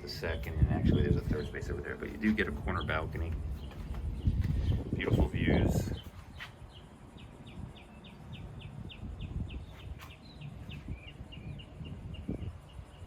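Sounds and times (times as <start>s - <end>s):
bird chirping rapidly: 0.0s - 13.0s.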